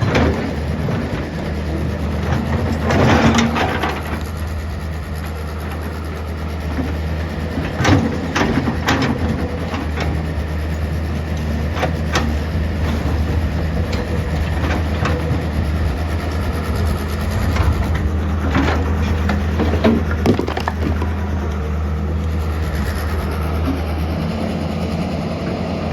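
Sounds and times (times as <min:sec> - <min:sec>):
engine humming: 0:00.0 - 0:25.9
knocks and clanks: 0:17.5 - 0:21.2.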